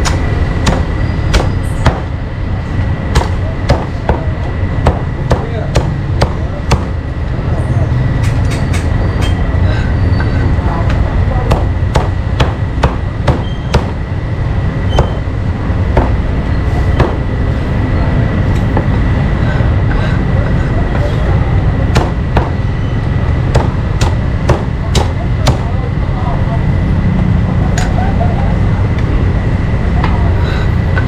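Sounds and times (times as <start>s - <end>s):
steady low rumble: 0.0s - 31.0s
knife chopping meat on board: 23.5s - 25.7s.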